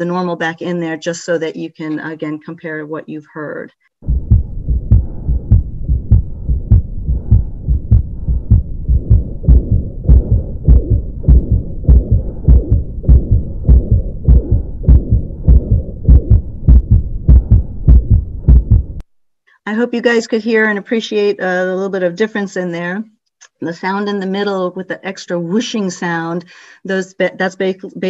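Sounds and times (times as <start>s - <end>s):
fast heartbeat through stethoscope: 4.0s - 19.0s
whooshing heart murmur: 4.0s - 19.0s.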